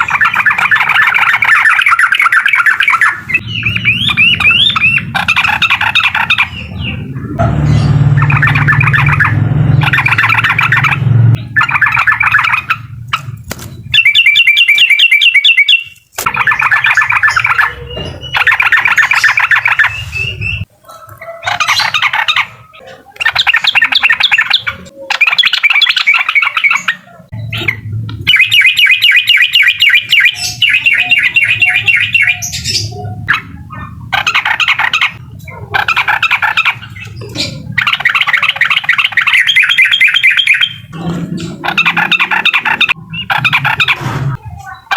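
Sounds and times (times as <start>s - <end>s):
bulbul chattering song: 0.0s - 44.9s
low rumble: 3.4s - 11.6s.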